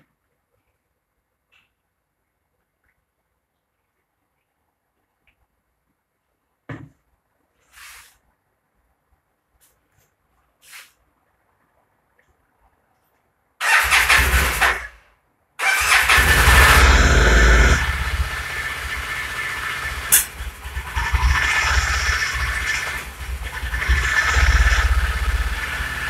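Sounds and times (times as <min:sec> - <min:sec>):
motorcycle engine starting and idling: 0:13.6 - 0:15.0, 0:15.6 - 0:26.0.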